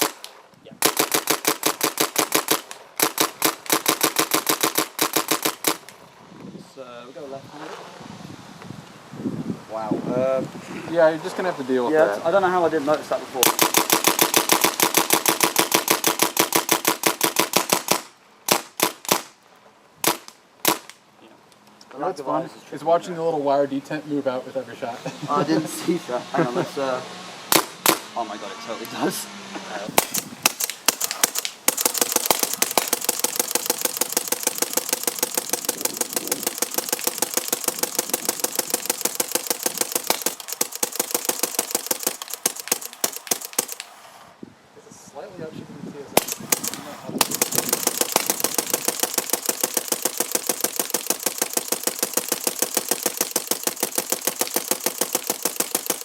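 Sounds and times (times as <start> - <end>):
paintball marker firing: 0.0 - 6.0, 13.4 - 19.3, 20.0 - 21.0, 27.5 - 28.1, 30.0 - 44.0, 46.2 - 56.0.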